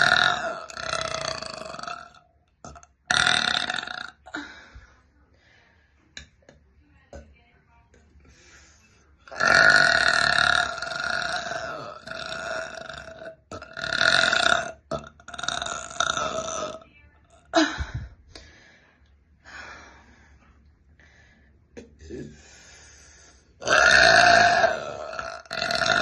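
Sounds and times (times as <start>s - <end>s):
person burping: 0.0s - 4.6s, 9.3s - 16.8s, 21.8s - 22.4s, 23.6s - 26.0s.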